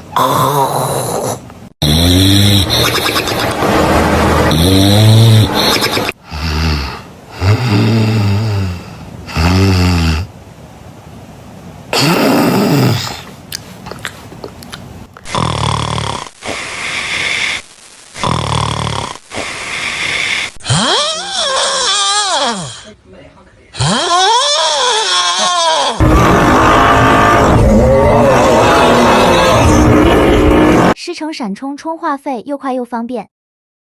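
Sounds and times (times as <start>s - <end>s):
person snoring: 0.1s - 3.3s, 4.5s - 10.3s, 12.0s - 13.3s, 15.2s - 22.9s, 23.8s - 31.0s.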